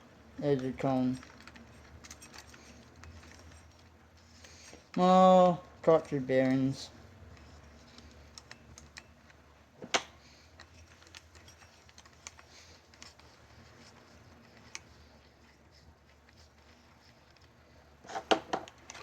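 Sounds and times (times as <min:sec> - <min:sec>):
small metal clicks and taps: 0:07.3 - 0:15.0.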